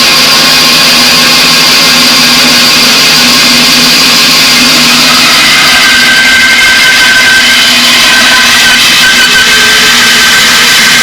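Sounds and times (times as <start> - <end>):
high whine: 0.0 - 11.0
woodworking power tool running: 0.0 - 11.0.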